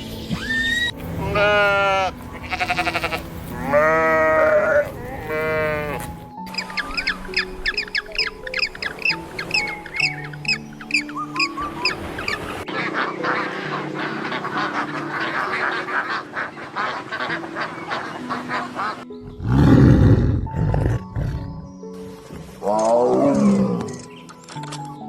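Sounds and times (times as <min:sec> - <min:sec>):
background music with held notes: 0:00.0 - 0:25.0
animal calls: 0:03.7 - 0:21.2.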